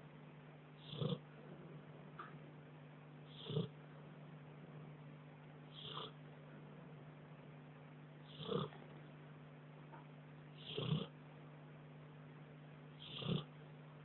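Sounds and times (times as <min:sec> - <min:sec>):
faint steady hum: 0:00.0 - 0:14.0
dog snoring: 0:00.8 - 0:01.9, 0:03.3 - 0:03.8, 0:05.7 - 0:06.2, 0:08.2 - 0:08.9, 0:10.6 - 0:11.2, 0:13.0 - 0:13.6.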